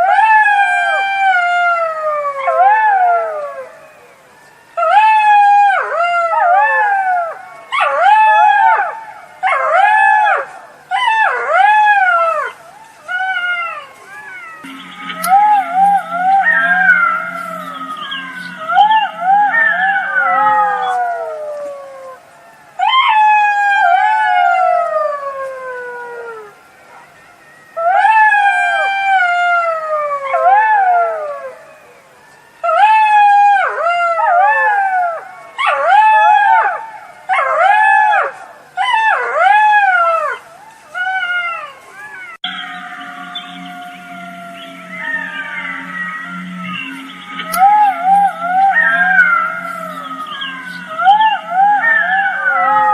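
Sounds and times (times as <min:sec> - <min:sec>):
jackals howling: 0:00.0 - 0:52.9
jackals yelping: 0:04.7 - 0:24.9, 0:32.6 - 0:52.9.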